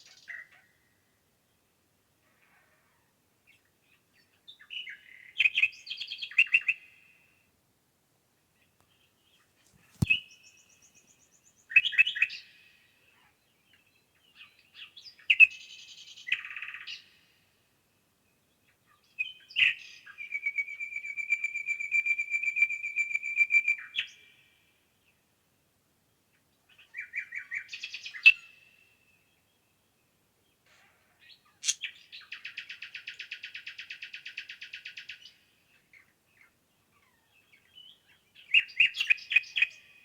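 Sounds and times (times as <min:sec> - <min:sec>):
songbirds singing: 0:08.6 - 0:17.2, 0:31.2 - 0:40.0.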